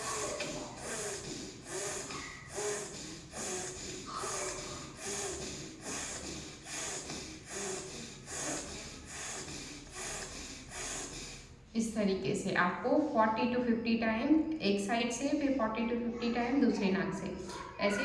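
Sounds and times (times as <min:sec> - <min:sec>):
rapid forceful nose breathing: 0:00.0 - 0:11.8.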